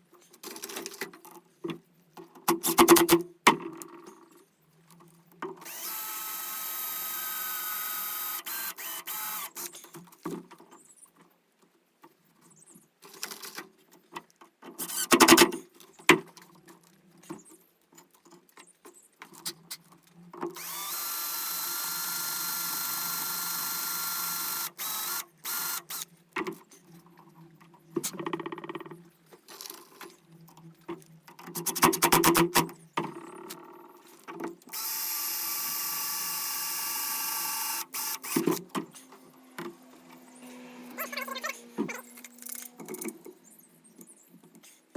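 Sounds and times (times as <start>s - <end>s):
power drill driving screws: 5.6s - 9.8s, 14.8s - 15.4s, 20.6s - 26.0s, 34.7s - 43.6s.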